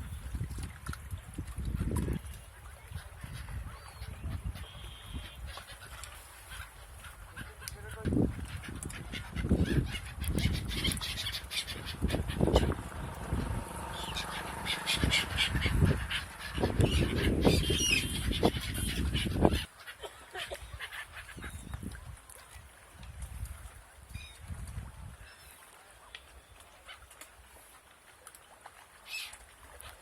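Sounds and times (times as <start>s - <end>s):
waterfowl honking and calling: 1.9s - 21.8s.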